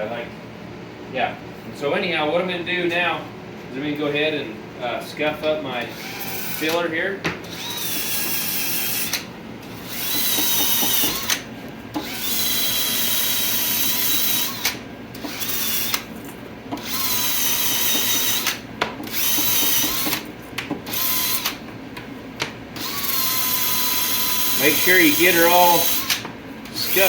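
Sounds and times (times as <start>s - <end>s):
rotary tool whine and grinding: 5.9s - 20.3s, 20.9s - 21.6s, 22.8s - 27.0s.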